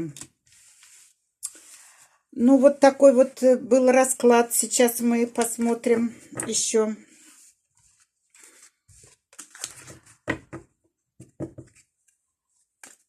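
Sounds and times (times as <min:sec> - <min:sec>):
cards being shuffled: 0:07.9 - 0:10.2, 0:12.8 - 0:13.0.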